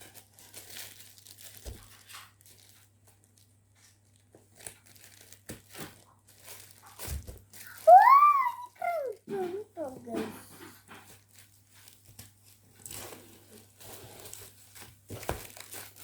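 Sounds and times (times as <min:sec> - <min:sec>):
packaging tearing and crinkling: 0:00.0 - 0:03.4, 0:04.6 - 0:07.8, 0:11.3 - 0:16.0
high rising cry: 0:07.8 - 0:09.2.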